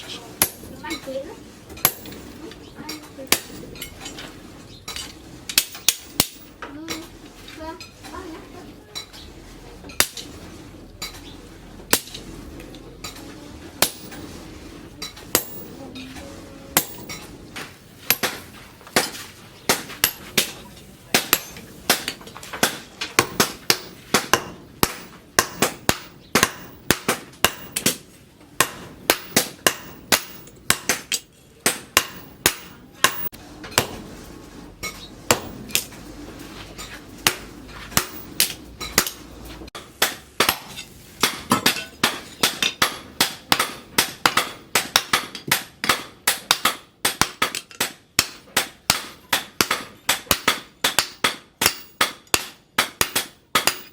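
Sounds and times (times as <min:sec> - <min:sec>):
hammer striking steel on anvil: 0:00.4 - 0:01.0, 0:01.7 - 0:04.1, 0:04.9 - 0:06.6, 0:13.0 - 0:14.4, 0:15.0 - 0:16.0, 0:16.7 - 0:34.0, 0:34.8 - 0:36.0, 0:36.8 - 0:53.9.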